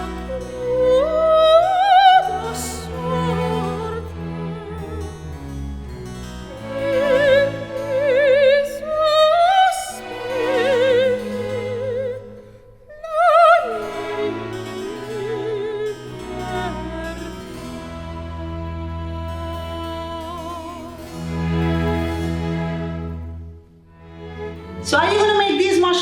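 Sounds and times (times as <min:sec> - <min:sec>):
operatic voice singing: 0:00.0 - 0:05.3, 0:06.6 - 0:21.3
instrumental accompaniment: 0:00.0 - 0:26.0.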